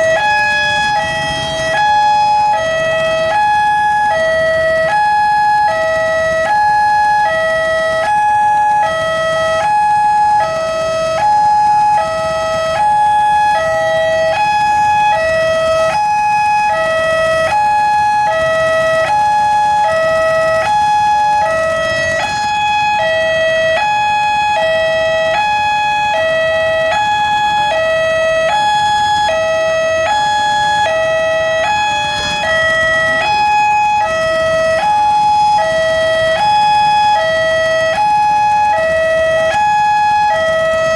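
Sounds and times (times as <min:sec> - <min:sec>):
two-tone crossing alarm: 0:00.0 - 0:40.9.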